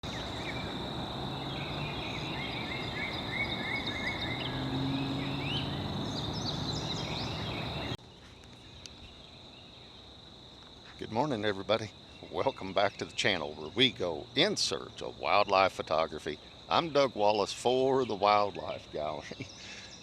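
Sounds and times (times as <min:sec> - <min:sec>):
bird chirping: 0:00.0 - 0:10.1, 0:11.5 - 0:14.2, 0:17.9 - 0:20.0
high insect drone: 0:00.0 - 0:20.0.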